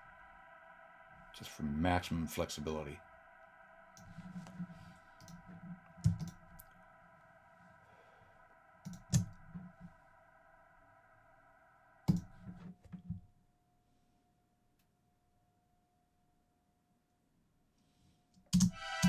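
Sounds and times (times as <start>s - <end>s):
synth pad drone: 0.0s - 12.6s, 18.7s - 19.0s.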